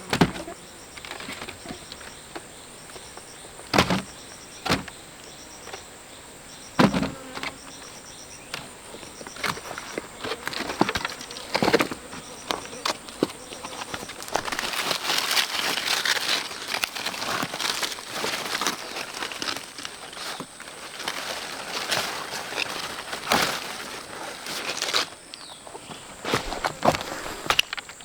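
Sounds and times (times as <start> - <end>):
rustling and crackling leaves: 0.0 - 28.0.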